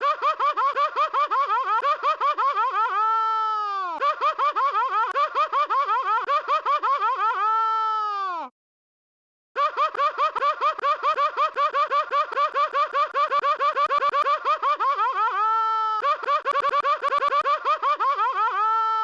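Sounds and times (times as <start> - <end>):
rapid pitched voice-like chirps: 16.0 - 18.2.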